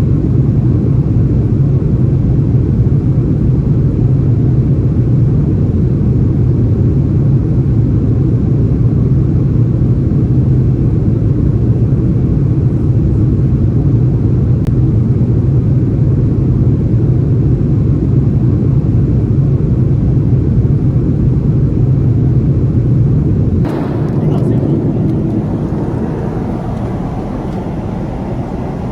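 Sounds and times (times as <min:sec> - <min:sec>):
airliner cabin rumble: 0:23.7 - 0:28.9.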